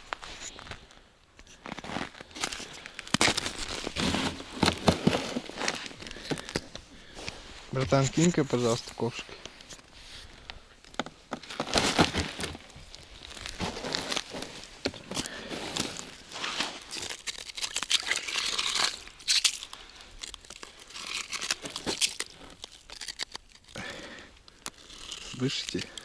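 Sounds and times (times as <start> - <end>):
ice scoop scraping slush and ice: 3.2 - 5.9, 13.5 - 19.6.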